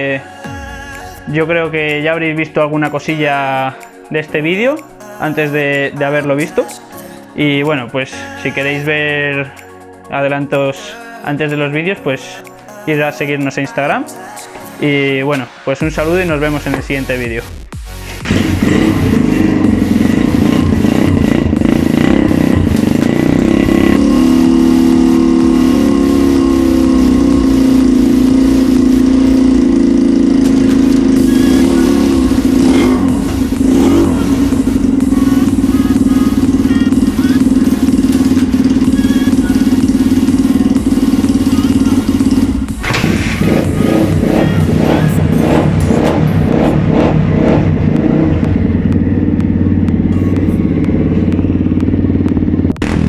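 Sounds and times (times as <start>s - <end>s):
motorbike engine running: 18.2s - 53.0s.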